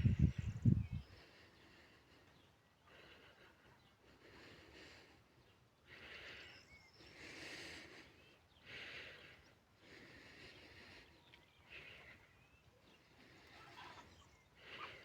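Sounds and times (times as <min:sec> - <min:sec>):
soft breathy puffs: 0:00.0 - 0:15.0
faint bird chirps: 0:05.4 - 0:09.6, 0:10.6 - 0:15.0.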